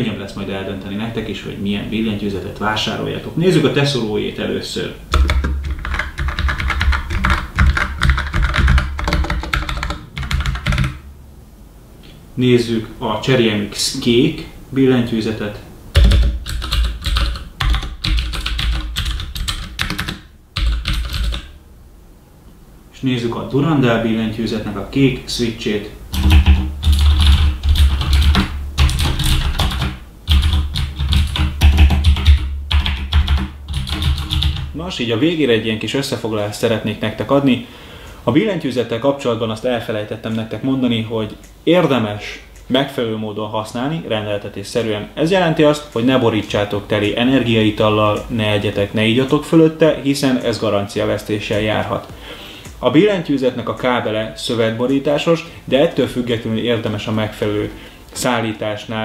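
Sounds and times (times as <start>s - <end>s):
mechanical keyboard typing: 5.1s - 11.0s, 16.0s - 21.5s, 26.1s - 34.7s.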